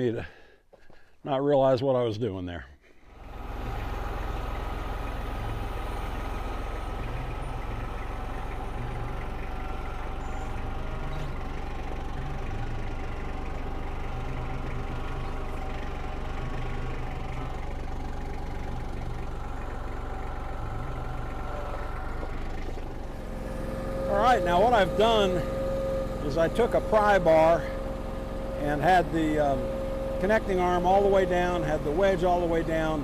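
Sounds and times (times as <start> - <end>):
log splitter engine running: 2.9 - 33.0.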